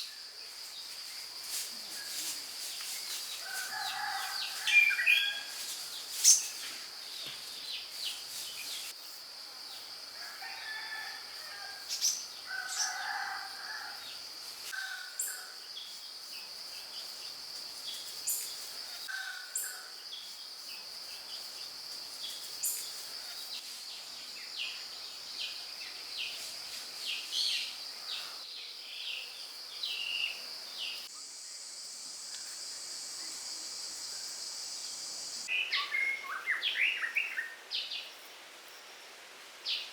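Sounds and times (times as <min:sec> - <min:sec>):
insect drone: 0:00.0 - 0:35.5
rooster crowing: 0:03.4 - 0:05.6, 0:10.2 - 0:11.9, 0:12.5 - 0:14.0.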